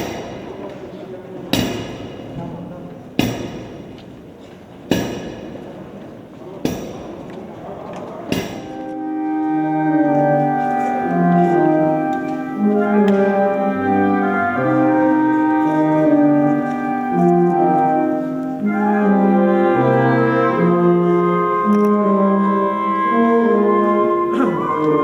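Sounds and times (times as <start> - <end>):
slow solemn chord music: 8.6 - 25.0.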